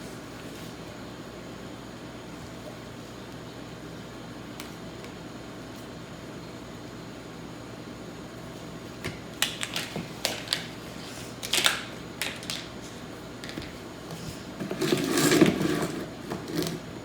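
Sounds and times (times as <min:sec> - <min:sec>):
plastic pieces clattering: 0:09.4 - 0:10.7, 0:11.4 - 0:12.7.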